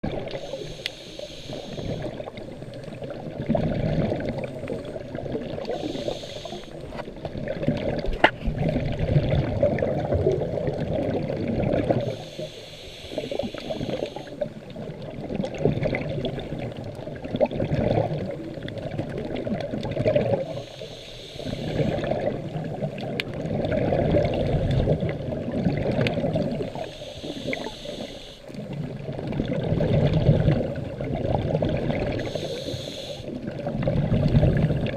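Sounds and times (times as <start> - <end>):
water gurgling and sloshing: 0.0 - 34.9
diver breathing: 0.3 - 3.1, 5.7 - 7.0, 12.0 - 14.6, 20.4 - 22.1, 26.6 - 28.7, 32.1 - 33.3.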